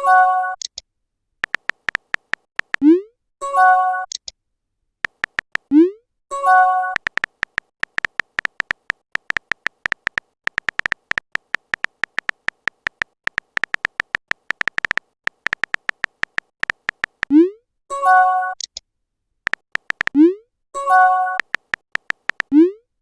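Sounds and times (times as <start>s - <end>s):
clicky typing beeps: 1.4s - 3.0s, 5.0s - 5.9s, 6.5s - 17.5s, 18.1s - 18.8s, 19.5s - 22.8s.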